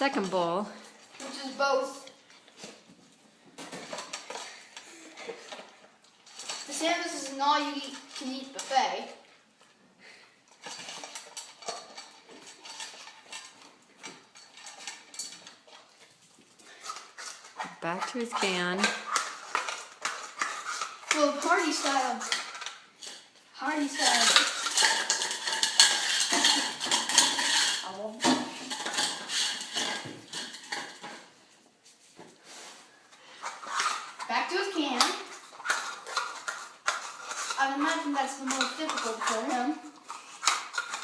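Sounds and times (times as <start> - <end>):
food dishes clattering: 10.5 - 31.4
bowls knocking and clinking: 23.9 - 31.3.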